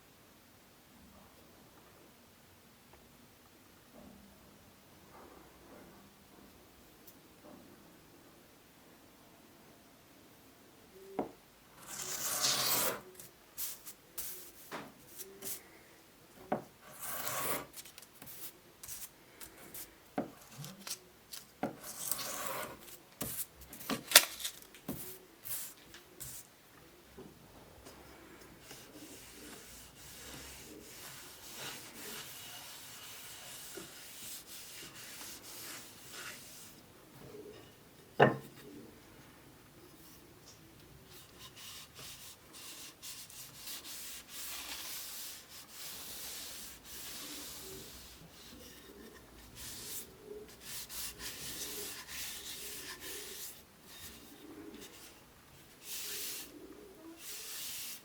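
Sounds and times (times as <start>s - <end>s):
sanding against wood: 16.9s - 17.7s, 28.7s - 36.6s, 49.5s - 53.6s.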